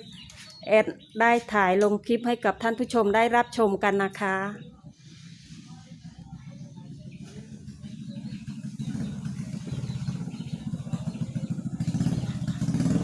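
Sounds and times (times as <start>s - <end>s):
small engine running: 6.0s - 13.0s.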